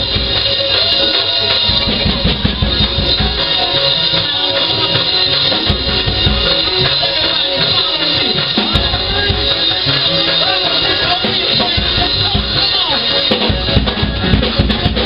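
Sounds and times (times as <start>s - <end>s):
cymbals: 0.0s - 15.0s
keyboard or organ chords: 0.0s - 15.0s
live church band music: 0.0s - 15.0s
kick drum: 8.7s - 9.5s.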